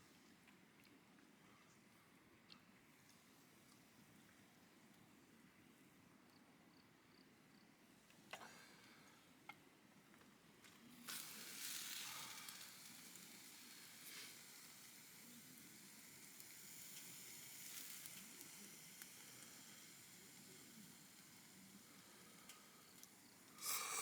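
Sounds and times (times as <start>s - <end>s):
food sizzling on hot pan: 11.0s - 24.0s.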